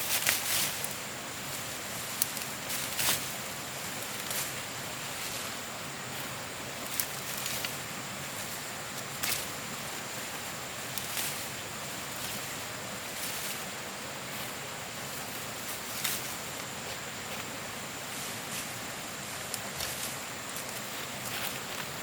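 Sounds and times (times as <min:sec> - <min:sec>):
outdoor background hiss: 0:00.0 - 0:22.0.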